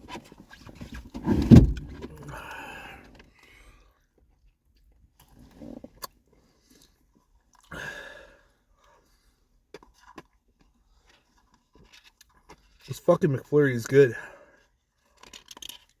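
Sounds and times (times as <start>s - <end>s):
soft chewing and mouth sounds: 3.3s - 13.0s, 14.3s - 16.0s.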